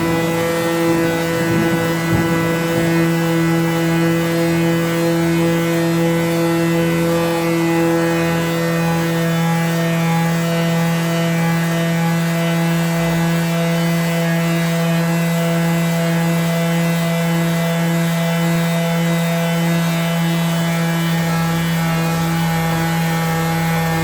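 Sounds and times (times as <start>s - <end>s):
electric sander on wood: 0.0s - 24.0s.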